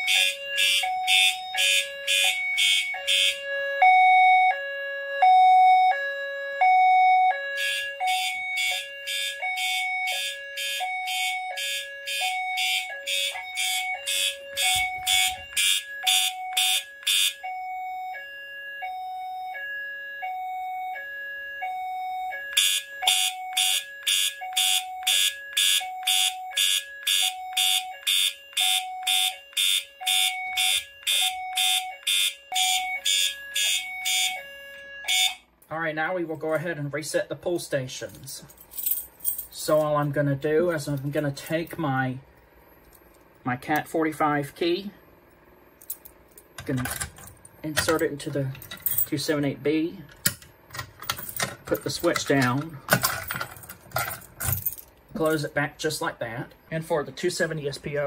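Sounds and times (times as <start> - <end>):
hi-lo two-tone alarm: 0.0 - 35.5
rapidly pulsing alarm horn: 0.0 - 35.5.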